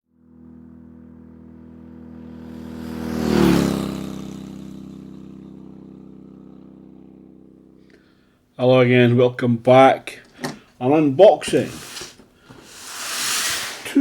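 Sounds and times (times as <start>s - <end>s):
vehicle driving past: 0.1s - 7.8s, 11.6s - 14.0s.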